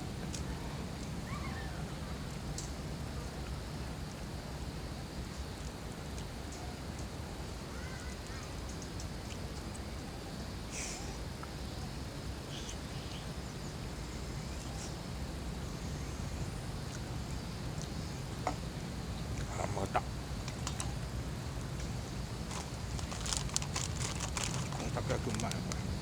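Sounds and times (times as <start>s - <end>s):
distant children's voices: 0.2s - 3.6s, 6.4s - 21.1s.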